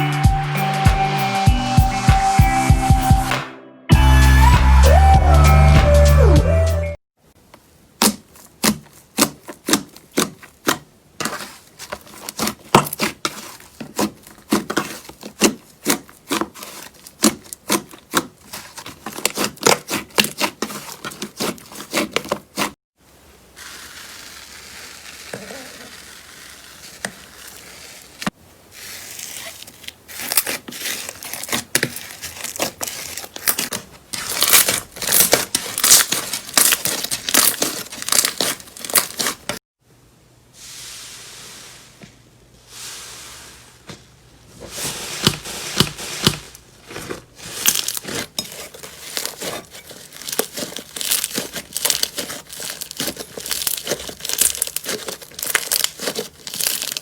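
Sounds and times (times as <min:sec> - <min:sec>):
soft rustling: 0:20.5 - 0:39.6, 0:40.6 - 0:57.0
slime squishing and popping: 0:49.1 - 0:57.0.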